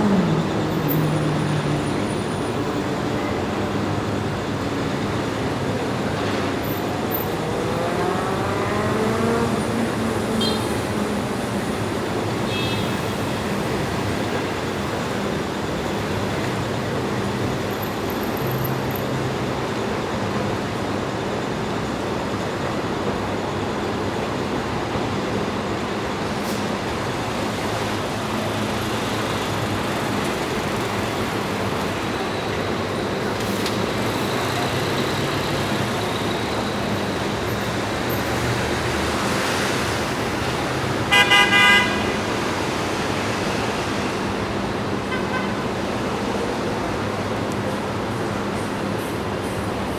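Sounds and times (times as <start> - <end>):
passing engine hums: 0.0 - 19.8
engine and tyre noise: 0.0 - 49.9.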